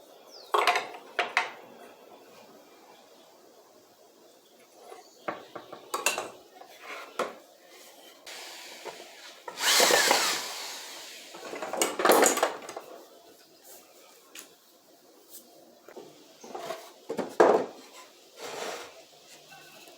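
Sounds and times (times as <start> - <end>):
loud bursts of noise: 8.3 - 11.5.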